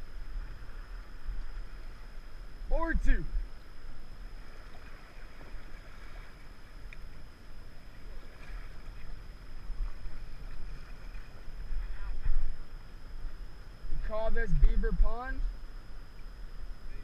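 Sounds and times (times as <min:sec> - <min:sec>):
paddles dipping in water: 0:04.3 - 0:12.3
wind rumbling on microphone: 0:08.0 - 0:17.0.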